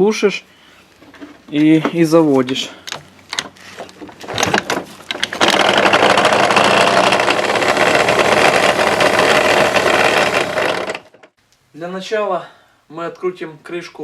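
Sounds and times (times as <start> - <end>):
scooter engine cranking: 2.8 - 11.3
two-stroke engine running: 5.2 - 11.1.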